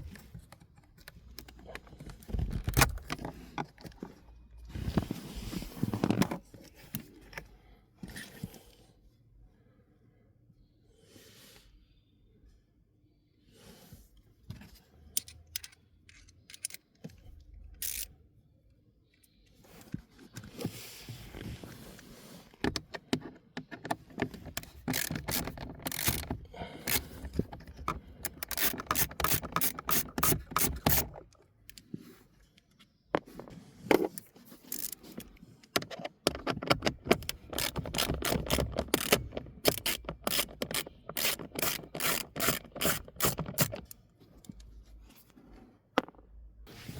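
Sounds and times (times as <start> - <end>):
ratchet wrench clicking: 17.8 - 18.1, 24.6 - 27.1, 28.2 - 31.1, 34.7 - 35.0, 37.3 - 44.0.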